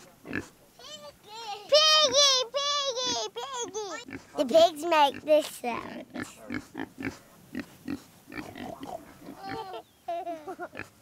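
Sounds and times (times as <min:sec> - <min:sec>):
pigs grunting: 0:05.1 - 0:09.8.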